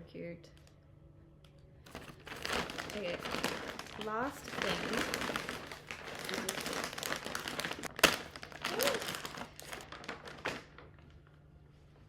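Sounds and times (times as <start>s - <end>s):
packaging crinkling and rustling: 1.8s - 11.3s.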